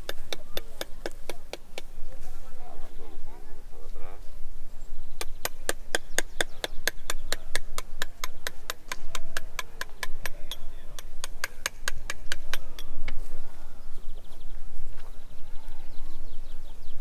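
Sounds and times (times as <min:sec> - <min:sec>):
murmur of voices: 0:00.0 - 0:04.5, 0:06.2 - 0:16.9
rapid sharp knocks: 0:05.2 - 0:12.7.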